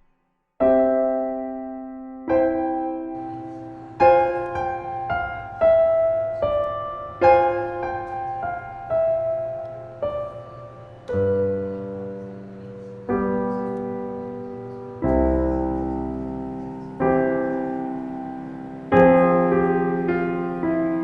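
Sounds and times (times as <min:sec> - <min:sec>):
gentle piano music: 0:00.0 - 0:21.0.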